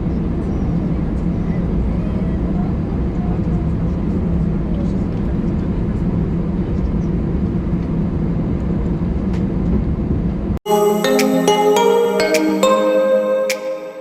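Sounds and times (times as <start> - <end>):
electronic music: 10.6 - 14.0.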